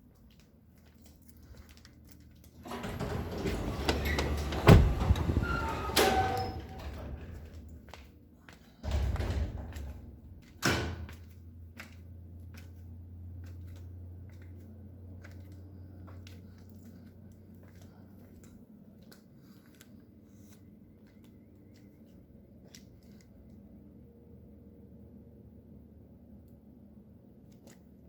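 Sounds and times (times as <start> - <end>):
machinery hum: 2.6 - 11.6.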